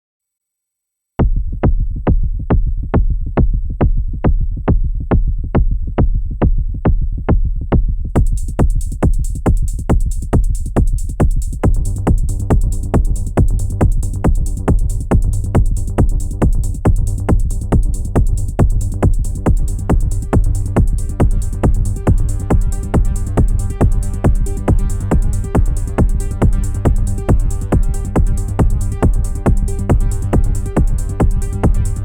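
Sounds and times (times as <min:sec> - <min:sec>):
drum-machine hi-hats: 0:01.2 - 0:32.0
techno kick drum: 0:01.2 - 0:32.0
synth bass line: 0:11.6 - 0:32.0.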